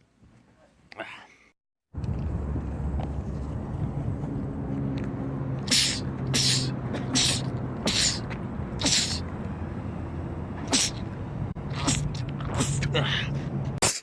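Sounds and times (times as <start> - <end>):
man sneezing: 5.7 - 8.2, 8.8 - 9.2, 10.7 - 11.0, 11.8 - 13.2.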